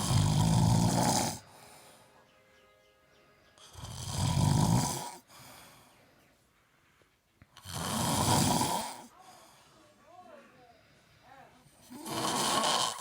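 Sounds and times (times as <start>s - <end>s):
ape snoring: 0.0s - 1.5s, 3.7s - 5.3s, 7.6s - 9.1s, 11.9s - 13.0s.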